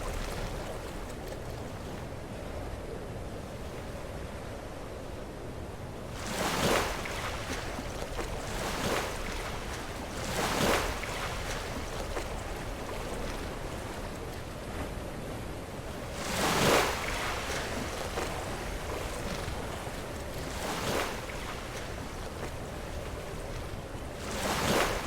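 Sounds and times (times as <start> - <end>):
waves breaking against rocks: 6.2 - 14.5.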